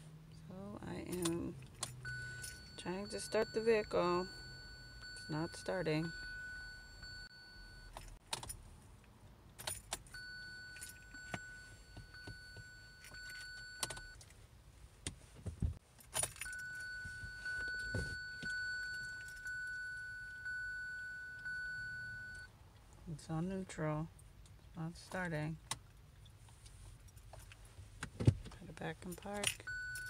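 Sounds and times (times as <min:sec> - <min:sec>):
high electronic warning tone: 0:02.1 - 0:08.0
keys jangling: 0:15.9 - 0:16.8.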